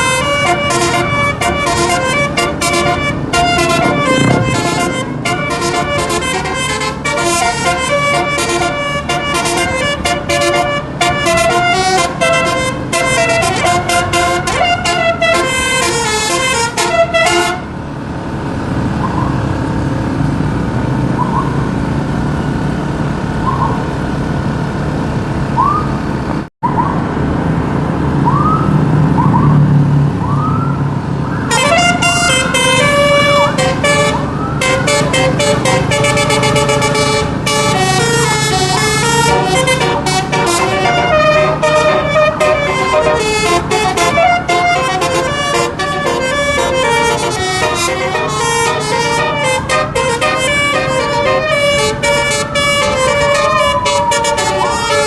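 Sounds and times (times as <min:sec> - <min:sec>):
bus horn playing a tune: 0:00.0 - 0:18.0, 0:31.5 - 0:55.0
bus engine running: 0:00.0 - 0:55.0.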